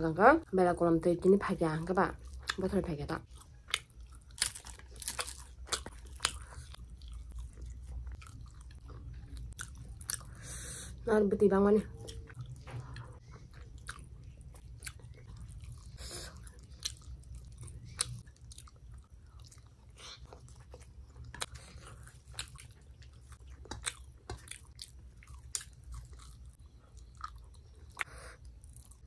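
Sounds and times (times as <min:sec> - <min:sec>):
low steady hum: 0:00.0 - 0:29.0
person chewing and biting: 0:03.3 - 0:10.3, 0:13.3 - 0:29.0
crunch of food: 0:03.4 - 0:10.3.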